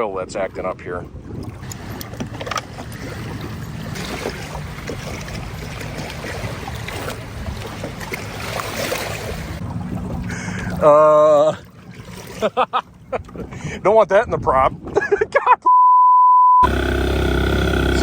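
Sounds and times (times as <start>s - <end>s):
wind: 0.0s - 15.8s, 16.6s - 18.0s
water rushing past hull: 1.0s - 13.7s, 16.6s - 18.0s
outboard motor running: 1.5s - 13.8s, 16.6s - 18.0s
engine misfire: 16.6s - 18.0s.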